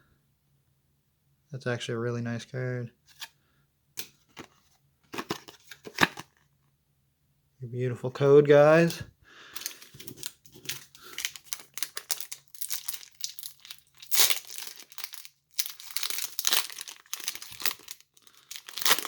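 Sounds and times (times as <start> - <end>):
foil wrapper crinkling and tearing: 9.6 - 19.0.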